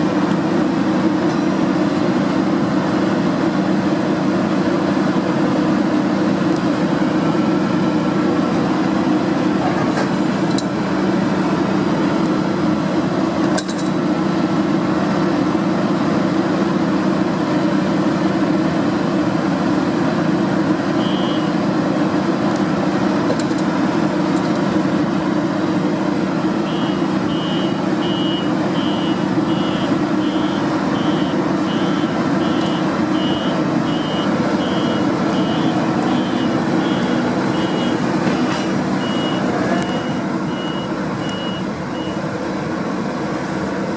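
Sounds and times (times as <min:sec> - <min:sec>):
combine harvester drone: 0:00.0 - 0:43.9
reversing alarm beeping: 0:21.0 - 0:21.6, 0:26.6 - 0:42.2.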